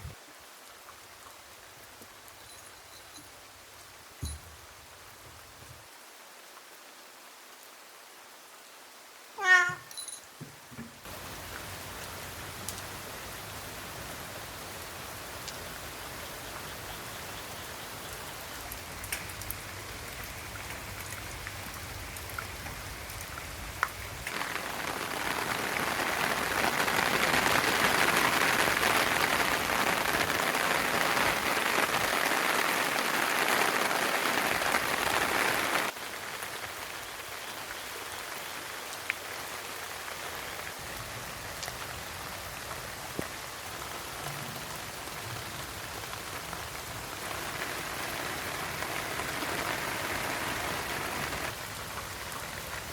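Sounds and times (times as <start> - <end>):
steady rain: 0.0 - 52.9
cat meowing: 9.4 - 9.9.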